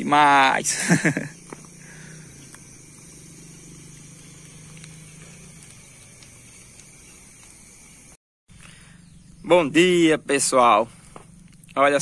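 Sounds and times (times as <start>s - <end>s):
fire hissing: 0.0s - 11.6s
fire crackles: 0.7s - 8.2s.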